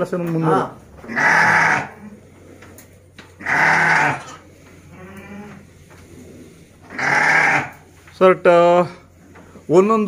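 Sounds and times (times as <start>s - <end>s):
sheep bleating: 1.1s - 2.1s, 3.4s - 4.3s, 6.9s - 7.8s.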